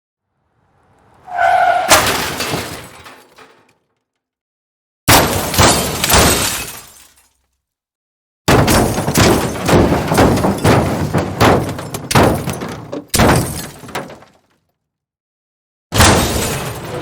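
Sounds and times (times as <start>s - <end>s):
car crash impacts: 0.6s - 3.9s, 8.5s - 14.5s, 16.0s - 17.0s
glass breaking: 1.9s - 3.6s, 5.1s - 7.4s, 8.5s - 14.4s, 16.0s - 17.0s.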